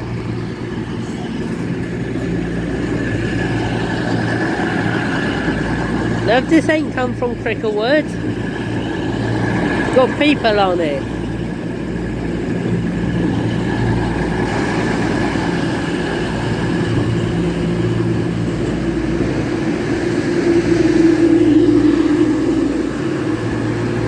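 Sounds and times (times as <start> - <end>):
train diesel engines humming: 0.0 - 24.0.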